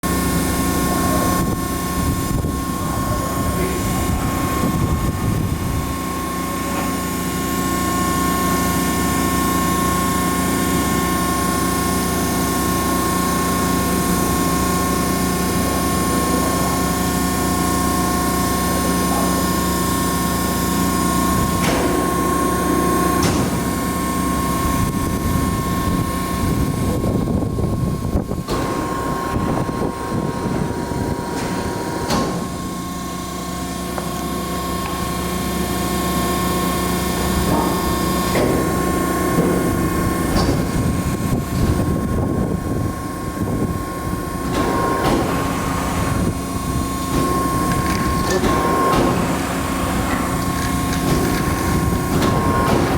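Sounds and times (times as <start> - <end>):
hydraulic pump hum and whine: 0.0 - 52.9
sharp knocks: 31.4 - 32.6, 37.3 - 41.8, 47.1 - 52.9.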